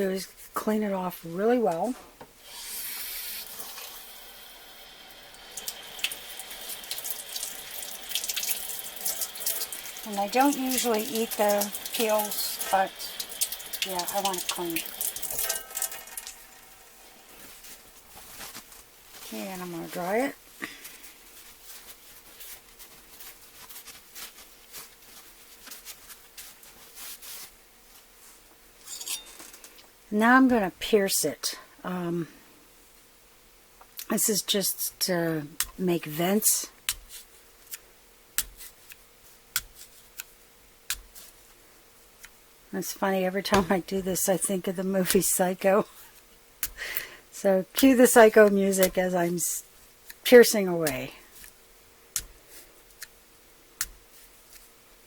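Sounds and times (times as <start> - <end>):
tap running water: 2.5 - 17.4
splashing and scrubbing by hand: 7.0 - 16.3.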